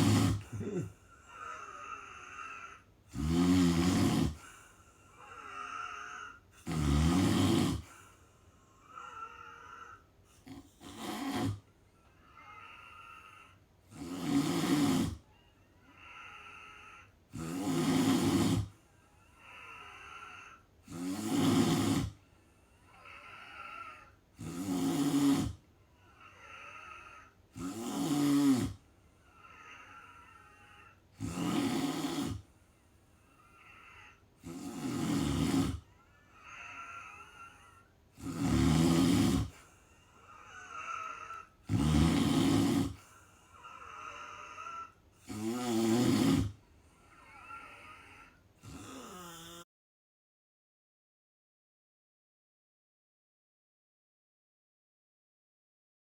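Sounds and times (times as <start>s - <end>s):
quiet breath: 0.0s - 6.7s, 7.6s - 14.3s, 15.0s - 17.4s, 18.2s - 21.0s, 22.0s - 24.4s, 25.4s - 27.6s, 28.6s - 45.4s, 46.2s - 49.7s
person snoring: 0.0s - 49.7s.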